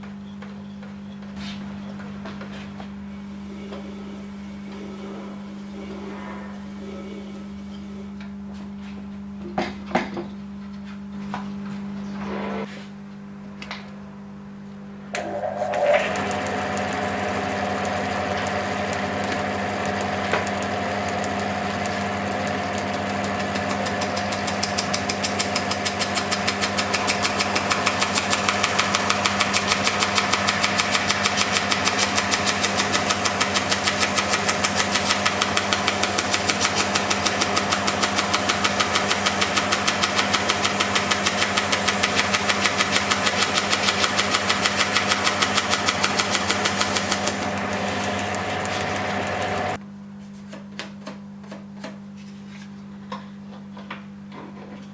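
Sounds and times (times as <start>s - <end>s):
band saw motor hum: 15.1s - 49.8s.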